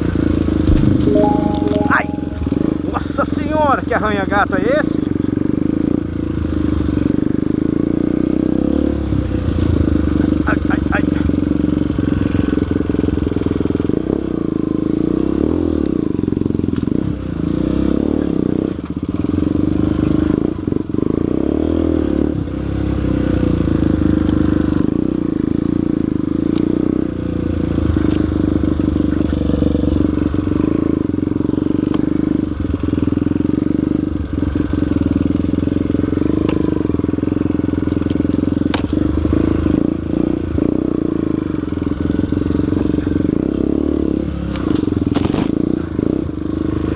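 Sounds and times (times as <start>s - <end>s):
motorcycle engine under load: 16.0s - 46.9s.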